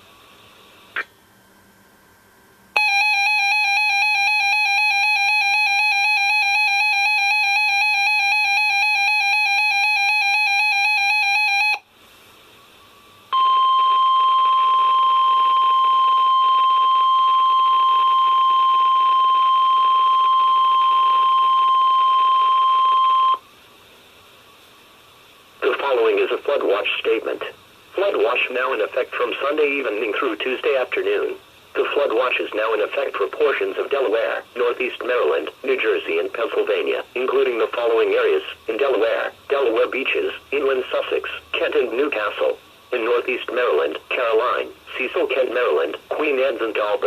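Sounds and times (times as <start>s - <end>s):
warbling electronic alarm beep: 2.8s - 11.8s, 13.4s - 23.4s
steady warning alarm tone: 2.8s - 11.9s, 13.3s - 23.4s.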